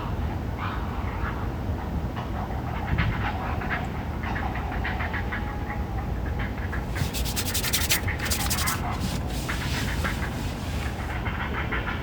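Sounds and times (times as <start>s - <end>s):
rapid clicking: 6.8s - 11.0s.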